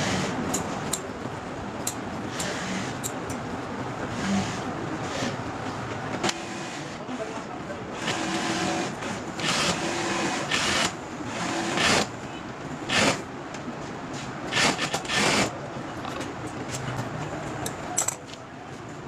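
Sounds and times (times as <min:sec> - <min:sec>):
steady workshop hum: 0:00.0 - 0:19.0
factory machine running in bursts: 0:01.6 - 0:13.4, 0:14.0 - 0:16.5.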